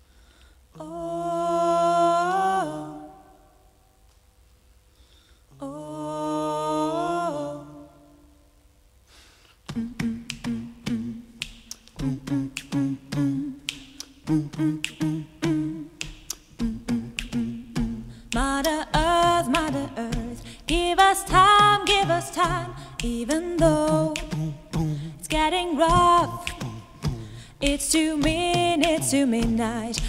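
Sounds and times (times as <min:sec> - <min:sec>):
hummed vocal chord: 0:00.7 - 0:03.6, 0:05.5 - 0:08.4, 0:09.7 - 0:11.4, 0:12.0 - 0:30.0
low vocal bass line: 0:09.7 - 0:11.4, 0:12.0 - 0:30.0.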